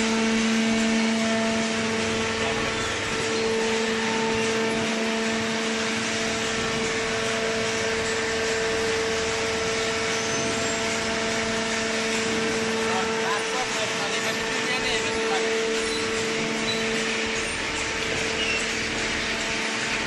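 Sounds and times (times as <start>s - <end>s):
hydraulic pump humming and whining: 0.0s - 20.0s.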